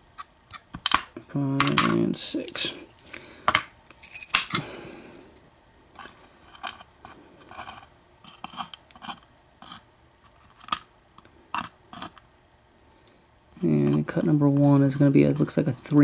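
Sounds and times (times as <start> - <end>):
lock pins clicking and scraping: 0.5 - 5.4.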